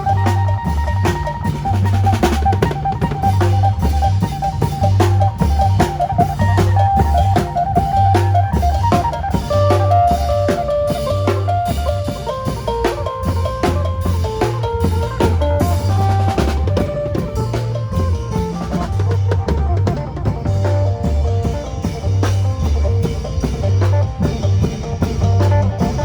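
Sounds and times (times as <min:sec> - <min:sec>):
deep bass line: 0:00.0 - 0:26.0
drum kit beat: 0:00.0 - 0:26.0.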